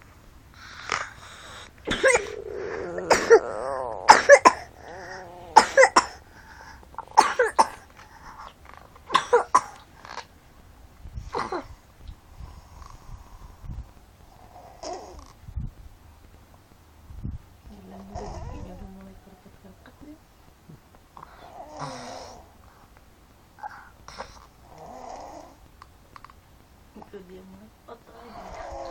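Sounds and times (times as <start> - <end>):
person snoring in harsh snorts: 0.6 - 6.2, 21.4 - 22.5.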